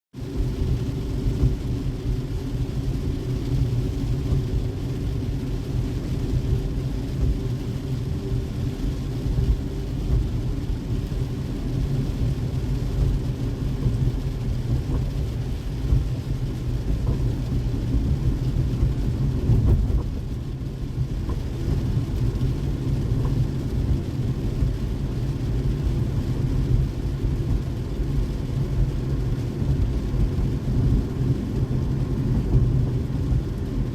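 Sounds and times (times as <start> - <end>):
car engine and tyres on wet road: 0.1 - 33.9.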